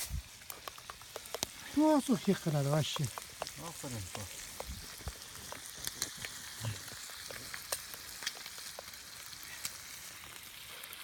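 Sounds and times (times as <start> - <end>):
fire pops and crackles: 0.0 - 11.0
fish sizzling in a pan: 0.0 - 11.0.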